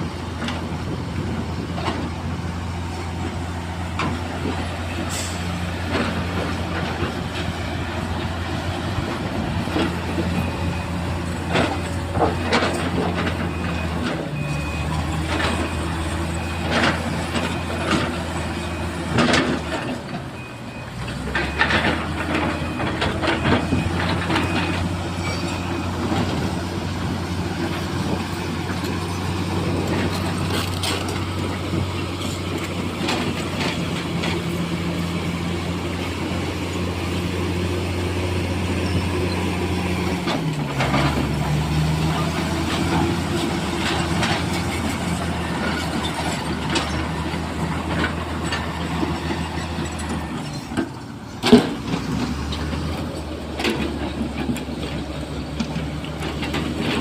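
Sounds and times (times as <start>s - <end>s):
diesel excavator engine running: 0.0s - 57.0s
clanks and knocks: 42.7s - 52.8s.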